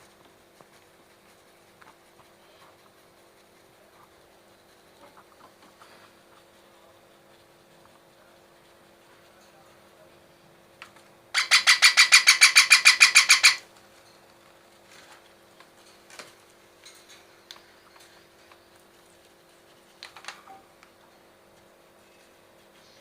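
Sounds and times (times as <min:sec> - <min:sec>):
faint clicks and scratches: 0:00.0 - 0:11.1, 0:13.8 - 0:23.0
parrot chick harsh calls: 0:11.3 - 0:13.7.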